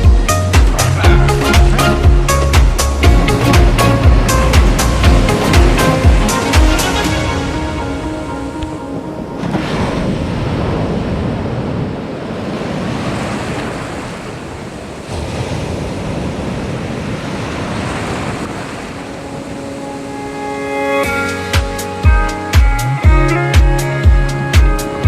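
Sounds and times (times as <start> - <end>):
ocean surf breaking: 0.0 - 22.6
wind buffeting microphone: 2.1 - 20.6.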